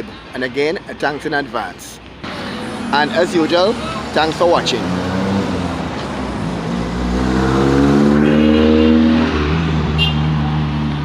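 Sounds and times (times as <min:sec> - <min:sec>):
vehicle engine passing: 0:02.2 - 0:11.0.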